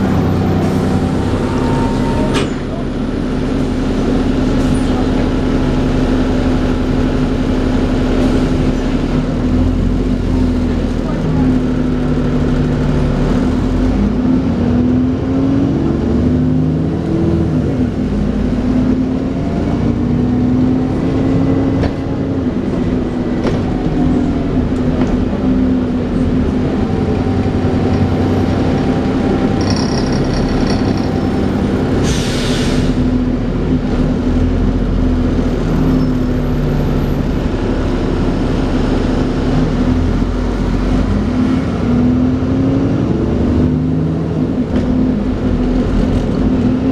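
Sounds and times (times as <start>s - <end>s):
bus engine running: 0.0s - 46.9s
bus whining drivetrain: 0.0s - 46.9s.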